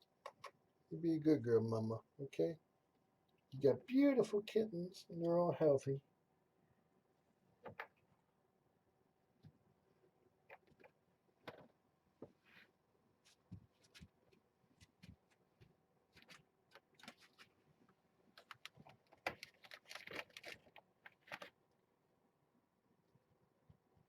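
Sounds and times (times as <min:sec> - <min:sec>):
small clicks and light knocks: 0:00.2 - 0:00.6, 0:18.3 - 0:21.5.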